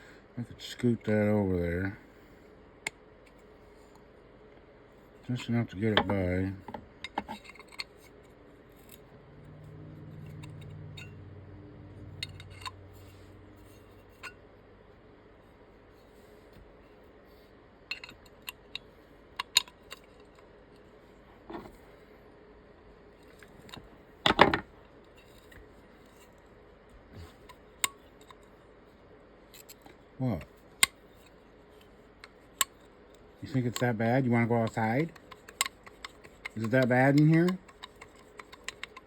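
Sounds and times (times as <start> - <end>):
low hum: 8.5 - 15.5
metal clicks and taps of tools: 12.1 - 13.1, 17.9 - 20.5, 27.5 - 28.5, 34.6 - 39.0.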